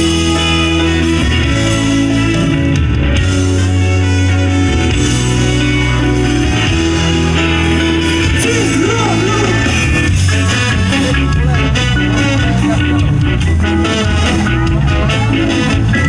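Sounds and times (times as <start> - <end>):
electric guitar: 0.0 - 16.0
sustained bass notes: 0.0 - 16.0.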